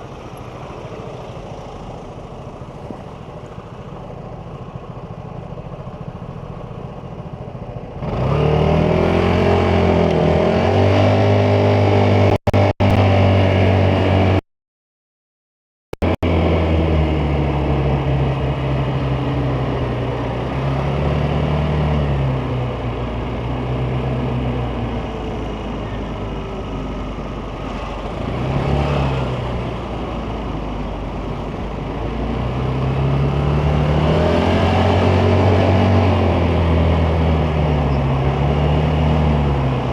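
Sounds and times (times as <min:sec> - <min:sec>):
scooter engine revving: 0:07.1 - 0:14.4, 0:16.0 - 0:39.9.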